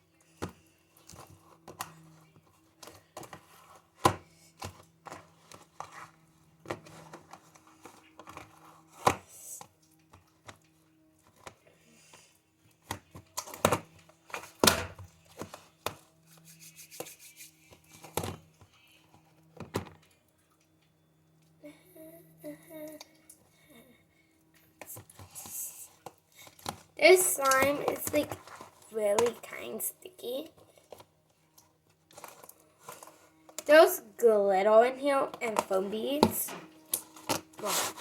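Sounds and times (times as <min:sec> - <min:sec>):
faint steady hum: 0:00.0 - 0:38.0.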